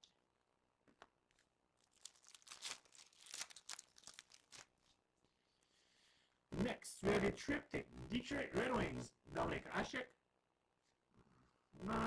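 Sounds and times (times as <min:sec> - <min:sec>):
wrapper crinkling and tearing: 0:01.3 - 0:05.0.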